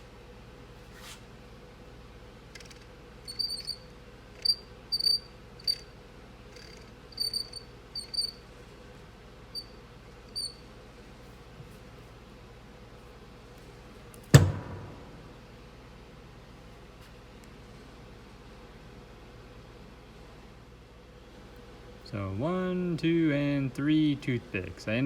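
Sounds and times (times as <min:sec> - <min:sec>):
faint steady hum: 0:00.0 - 0:25.0
cricket chirping: 0:03.3 - 0:05.9, 0:06.5 - 0:08.4.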